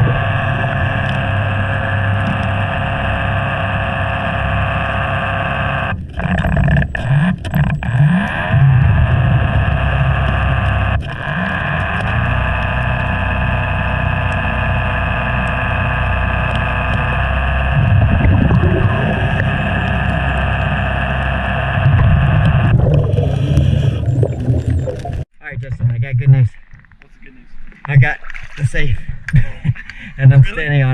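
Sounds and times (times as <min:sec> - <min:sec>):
underwater motorboat engine whine: 0:00.0 - 0:25.3
low bubbling rumble: 0:00.0 - 0:27.0.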